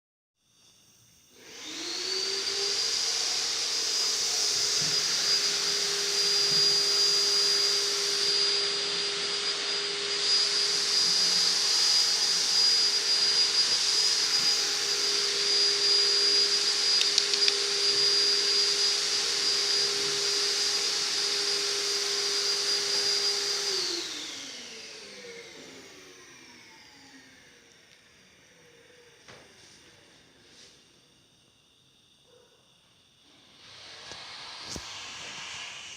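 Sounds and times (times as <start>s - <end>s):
motor winding down: 1.4s - 27.5s
electric motor whining: 1.4s - 27.6s.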